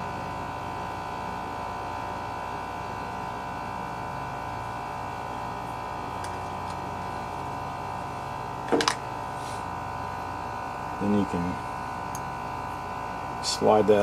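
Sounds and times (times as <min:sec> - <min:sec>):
electrical hum: 0:00.0 - 0:14.0.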